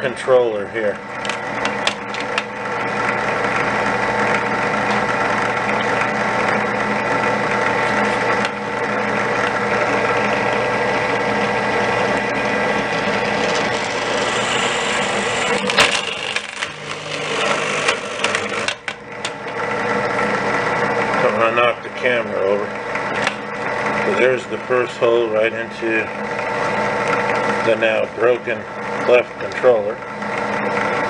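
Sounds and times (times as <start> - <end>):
drill press boring into plastic: 12.2 - 19.6.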